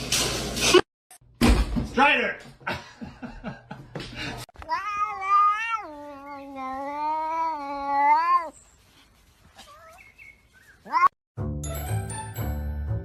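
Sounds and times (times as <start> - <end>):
cat yowling: 4.7 - 8.6, 10.8 - 11.2.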